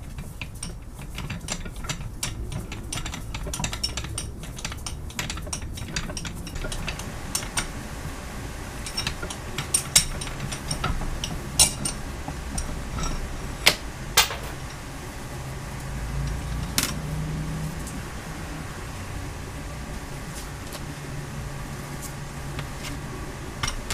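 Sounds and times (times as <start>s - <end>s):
steady low hum: 0.0s - 23.9s
metal tools clinking: 0.1s - 7.7s, 8.8s - 14.8s.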